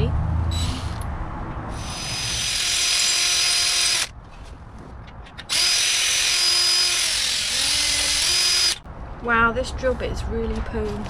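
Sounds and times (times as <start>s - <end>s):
electric drill drilling rivet: 1.7s - 4.1s, 5.4s - 8.8s.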